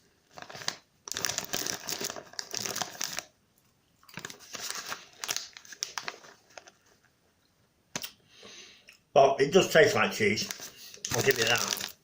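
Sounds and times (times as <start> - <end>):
snack bag crinkling: 0.3 - 3.3, 4.0 - 7.1, 10.4 - 12.0.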